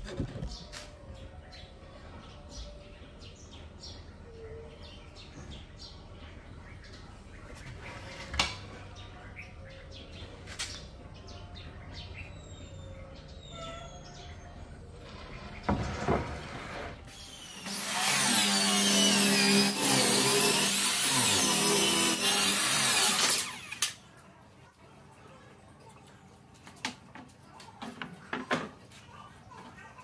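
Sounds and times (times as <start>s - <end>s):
birds chirping: 0.0s - 30.0s
power tool cutting wood: 16.6s - 24.0s.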